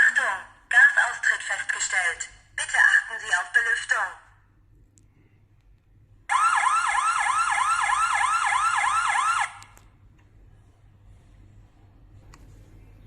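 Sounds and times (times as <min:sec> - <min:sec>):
gas alarm whooping siren: 0:06.3 - 0:09.7.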